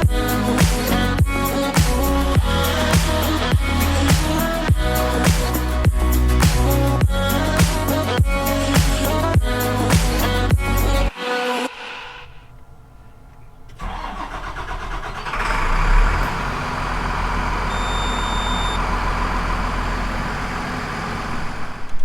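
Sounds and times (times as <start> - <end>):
engine cranking and idling: 11.7 - 22.0.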